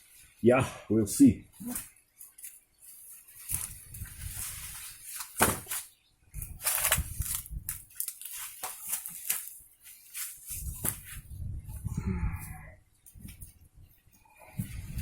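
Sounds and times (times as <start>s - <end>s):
rustling and sharp clicks: 1.7s - 11.2s.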